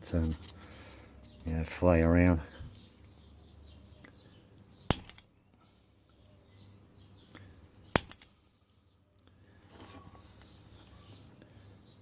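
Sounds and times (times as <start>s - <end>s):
center punch metallic snap: 4.9s - 5.3s, 7.9s - 8.4s.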